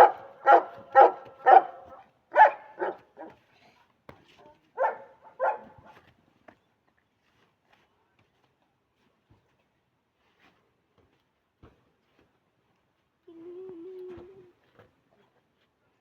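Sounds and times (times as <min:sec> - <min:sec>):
dog barking: 0:00.0 - 0:03.4, 0:04.8 - 0:05.9.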